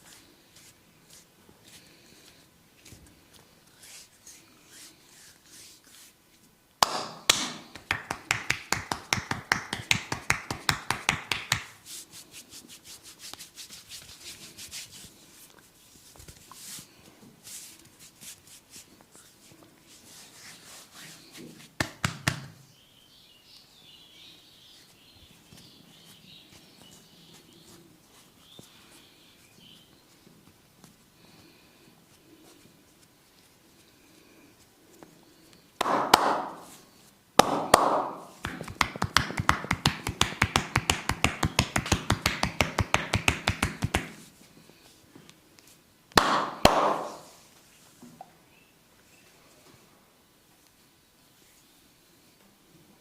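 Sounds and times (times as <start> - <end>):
rubbing on hair and skin: 0.0 - 6.5, 7.7 - 22.4, 38.0 - 44.4
rapid slapping taps on head: 6.8 - 11.8, 21.8 - 22.6, 35.8 - 36.8, 37.4 - 44.2, 46.1 - 47.3.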